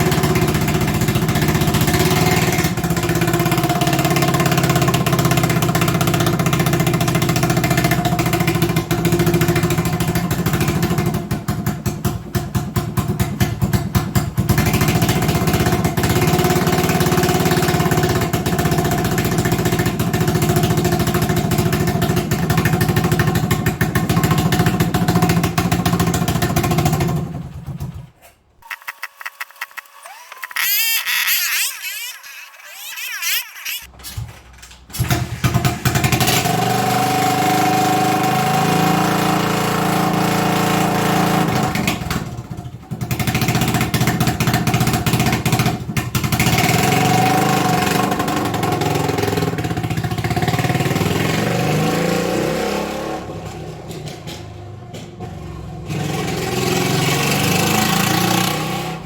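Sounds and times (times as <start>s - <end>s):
motorcycle engine running: 0.0s - 28.0s.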